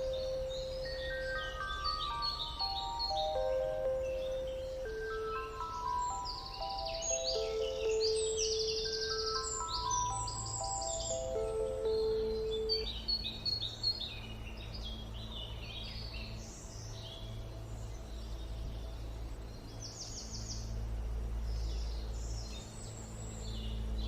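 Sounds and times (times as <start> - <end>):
held musical notes: 0.0 - 12.9
songbirds chirping and singing: 0.0 - 24.0
steady low drone: 0.0 - 24.0.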